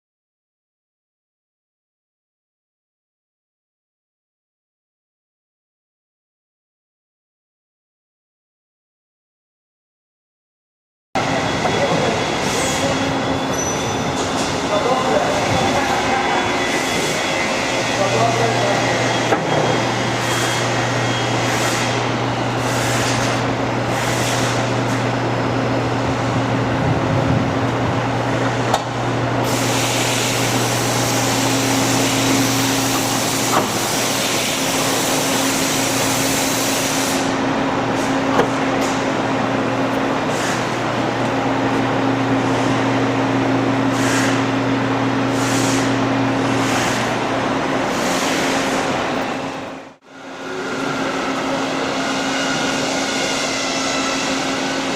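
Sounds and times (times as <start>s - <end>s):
low motor hum: 11.2s - 34.0s.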